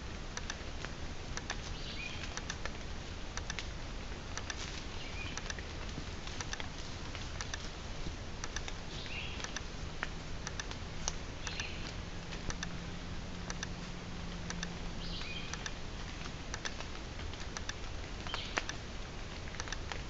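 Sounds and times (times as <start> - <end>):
background hiss: 0.0 - 20.0
low hum: 0.0 - 20.0
trail camera clicking: 0.3 - 0.6, 1.3 - 2.7, 3.4 - 7.8, 8.4 - 9.7, 10.4 - 12.8, 13.4 - 13.8, 14.5 - 18.8, 19.4 - 20.0.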